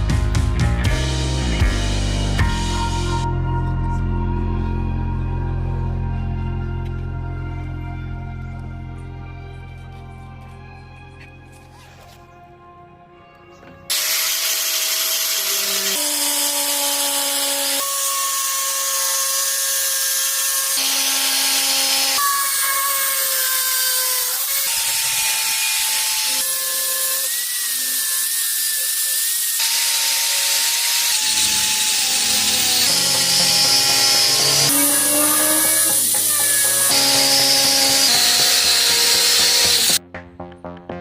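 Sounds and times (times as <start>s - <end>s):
small power tool whining: 13.7s - 40.0s.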